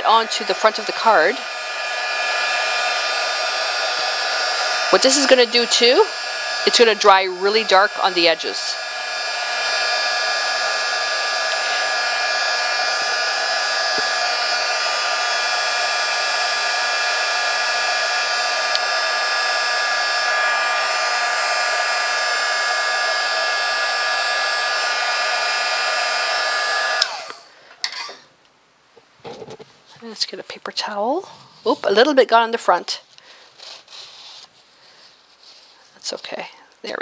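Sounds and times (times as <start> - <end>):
heat gun blowing with whine: 0.0 - 27.5.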